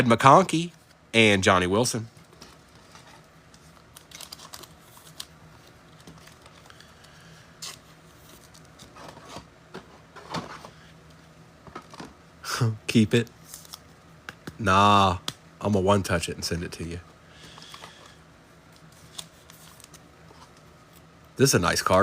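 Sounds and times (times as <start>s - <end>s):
cards rustling and clicking: 2.2s - 10.8s, 13.4s - 14.6s, 17.4s - 21.1s.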